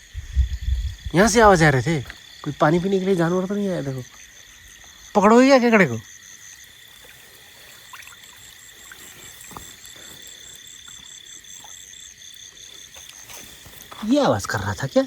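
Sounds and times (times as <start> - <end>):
insect high trill: 0.0 - 15.0
insect pulsing chirp: 0.0 - 15.0
trickling creek water: 0.0 - 15.0.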